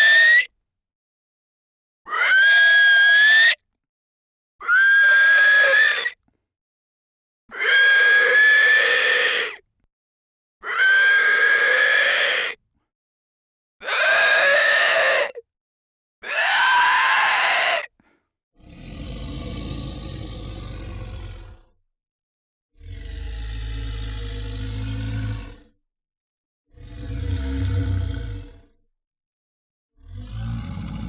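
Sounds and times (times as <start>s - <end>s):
monster rasping shrieks: 2.1s - 3.6s, 4.6s - 6.2s, 7.5s - 9.6s, 10.6s - 12.6s, 13.8s - 15.4s, 16.2s - 17.9s, 18.6s - 21.7s.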